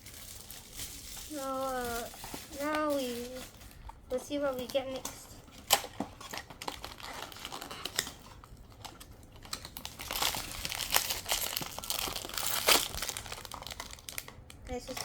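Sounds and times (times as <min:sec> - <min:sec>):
plastic packaging crinkling and tearing: 0:00.0 - 0:15.0
cardboard and parts clicking: 0:04.5 - 0:15.0.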